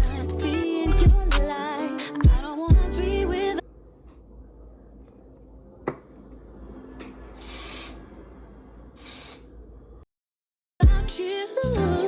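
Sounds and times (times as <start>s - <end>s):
spray bottle hissing: 7.4s - 8.0s, 9.0s - 9.5s.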